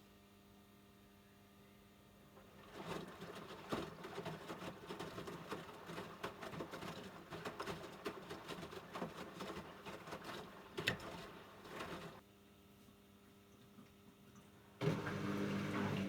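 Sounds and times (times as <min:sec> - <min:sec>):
washing machine drum sloshing: 0:02.4 - 0:12.2, 0:14.8 - 0:16.0.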